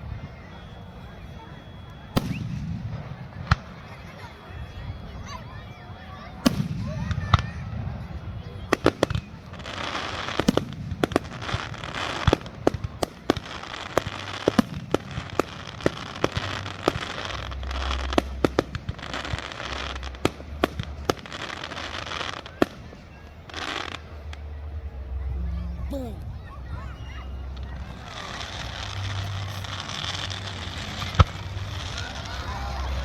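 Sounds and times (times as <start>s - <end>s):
firework bangs: 2.2s - 4.0s, 6.4s - 7.7s, 8.7s - 24.1s, 27.9s - 33.0s
firework crackling: 8.6s - 24.4s, 27.6s - 33.0s.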